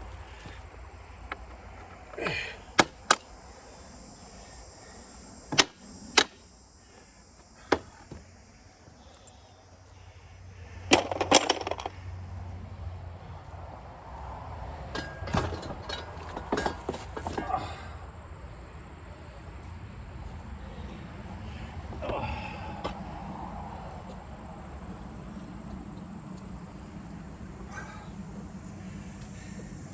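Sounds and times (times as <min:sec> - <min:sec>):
metallic knocks on iron parts: 0:10.9 - 0:11.9, 0:14.9 - 0:17.4.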